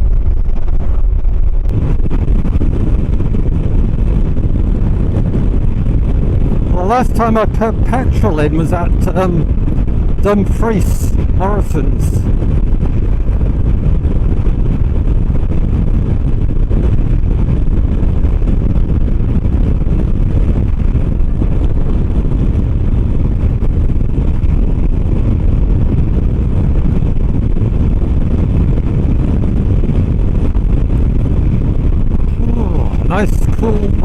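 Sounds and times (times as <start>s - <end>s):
wind buffeting microphone: 0.0s - 34.0s.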